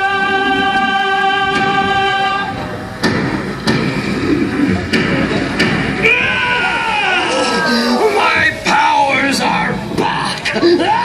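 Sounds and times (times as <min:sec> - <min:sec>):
noisy rumble: 0:00.0 - 0:11.0
sharp thuds: 0:03.0 - 0:06.2.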